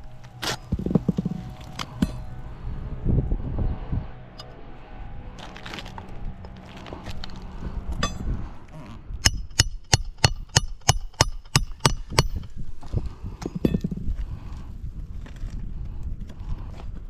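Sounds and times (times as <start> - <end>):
hammer blows on roofing nail: 9.3 - 12.5.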